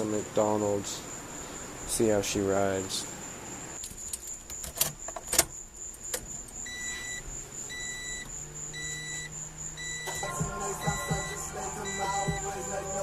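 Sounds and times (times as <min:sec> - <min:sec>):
car warning chime beeping: 0:06.6 - 0:12.6.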